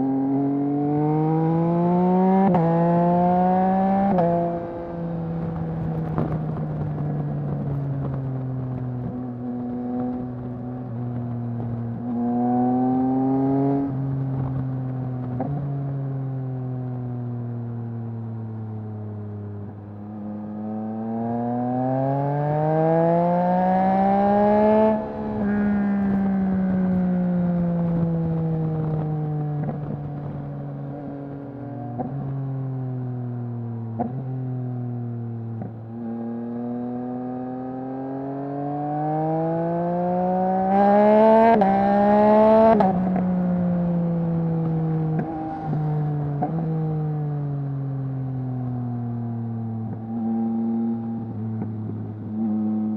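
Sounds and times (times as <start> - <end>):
motorcycle engine revving: 20.5 - 30.5, 35.6 - 48.0.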